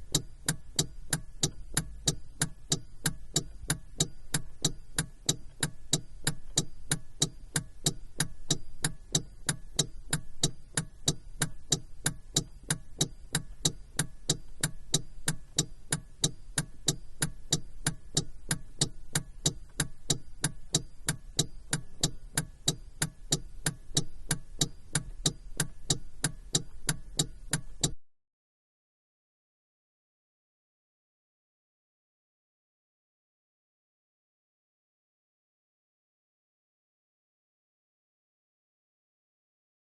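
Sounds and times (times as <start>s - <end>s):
low steady hum: 0.0s - 28.0s
turn signal ticking: 0.0s - 28.0s.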